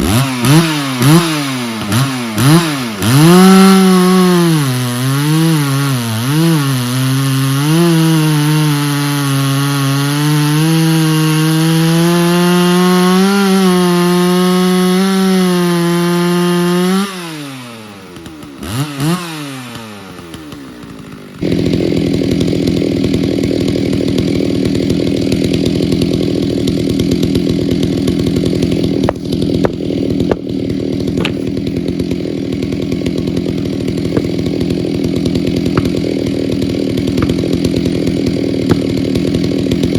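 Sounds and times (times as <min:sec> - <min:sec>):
chainsaw running at high revs: 0:00.0 - 0:39.9
sharp knocks: 0:29.0 - 0:30.5, 0:34.1 - 0:34.5, 0:35.6 - 0:36.1, 0:37.1 - 0:37.6, 0:38.6 - 0:39.1.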